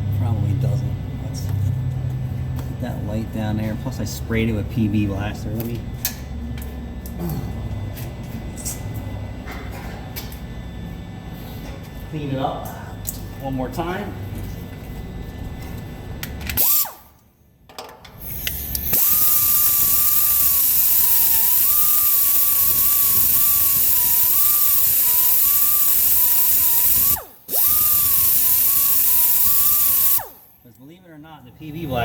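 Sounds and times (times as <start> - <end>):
power tool whining: 16.2 - 17.2, 18.2 - 30.6.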